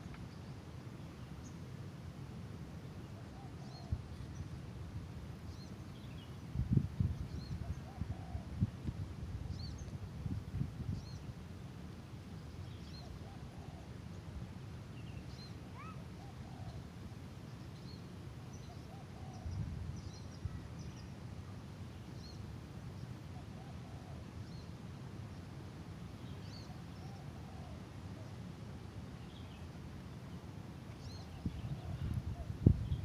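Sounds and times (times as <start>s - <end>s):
faint bird chirps: 15.0s - 16.8s, 30.9s - 33.0s.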